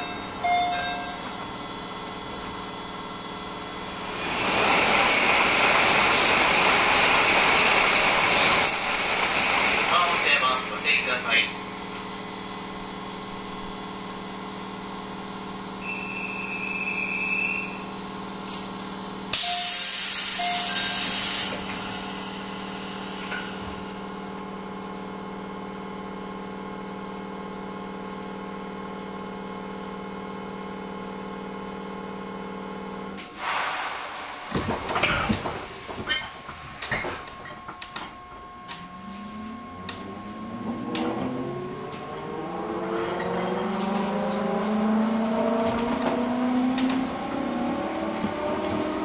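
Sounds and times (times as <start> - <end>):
train electrical hum: 0.0 - 49.0
air release hiss: 19.4 - 24.0, 33.4 - 35.9.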